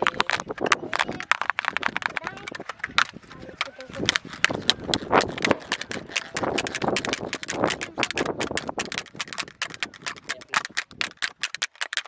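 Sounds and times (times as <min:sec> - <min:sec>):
scratchy rubbing: 0:03.9 - 0:11.5.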